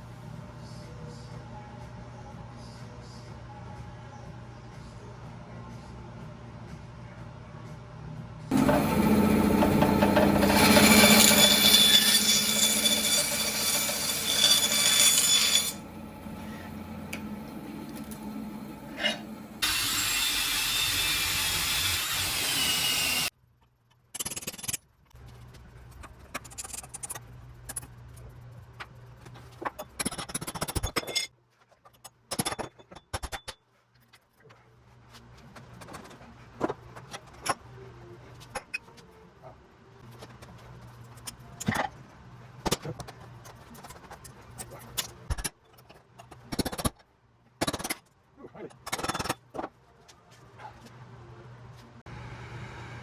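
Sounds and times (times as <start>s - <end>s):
hand tool scrapes and knocks: 8.5s - 19.8s
power tool running loudly: 8.5s - 23.3s.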